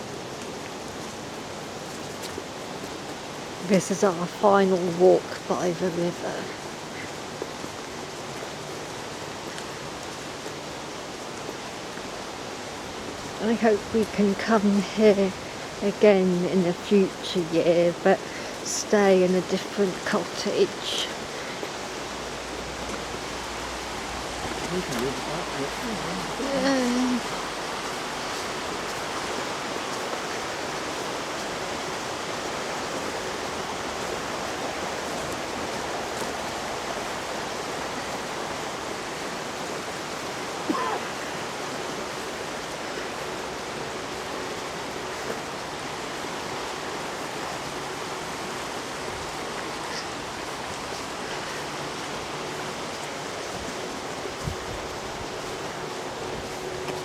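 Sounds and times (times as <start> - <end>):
river water rushing over rocks: 0.0 - 16.0, 16.6 - 57.0.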